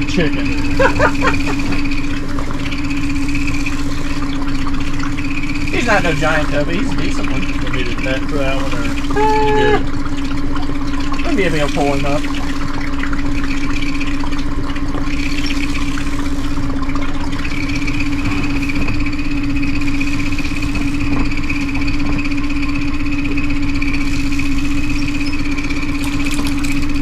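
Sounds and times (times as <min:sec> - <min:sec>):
outboard motor idling: 0:00.0 - 0:27.0.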